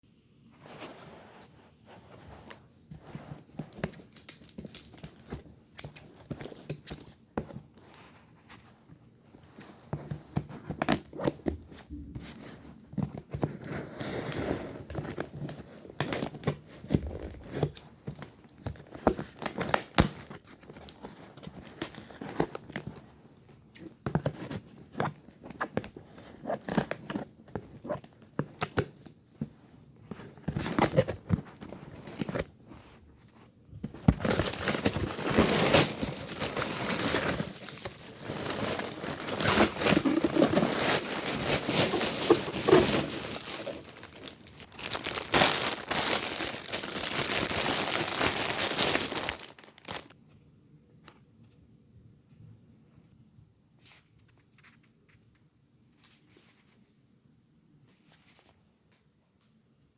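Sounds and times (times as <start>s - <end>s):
packaging tearing and crinkling: 34.0s - 50.2s.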